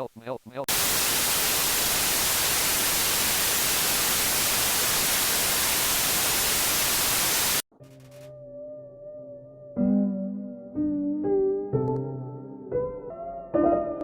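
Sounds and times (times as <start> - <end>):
white noise static: 0.0 - 7.6.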